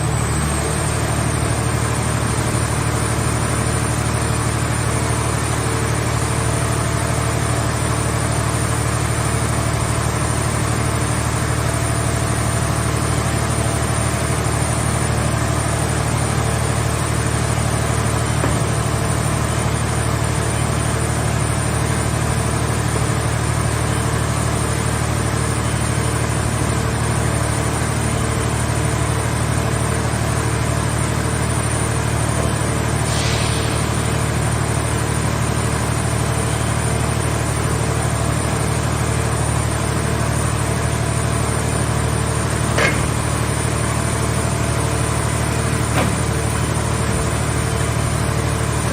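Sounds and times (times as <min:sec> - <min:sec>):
baler power unit humming: 0:27.0 - 0:48.9.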